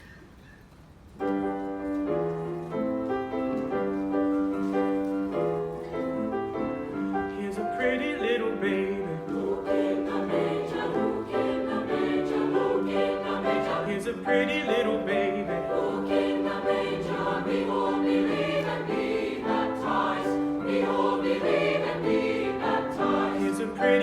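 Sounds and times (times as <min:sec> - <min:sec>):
group of voices singing: 0:08.0 - 0:24.0.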